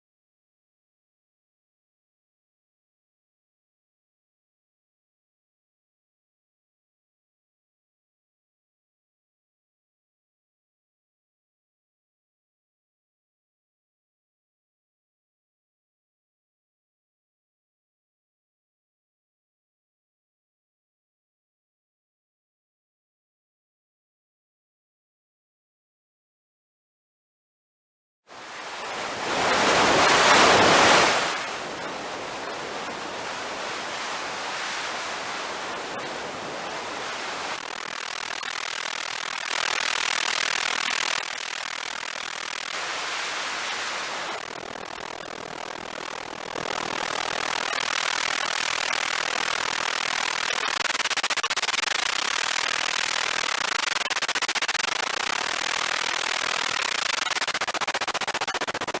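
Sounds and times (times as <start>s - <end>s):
synthesized noise hiss: 28.4s - 59.0s.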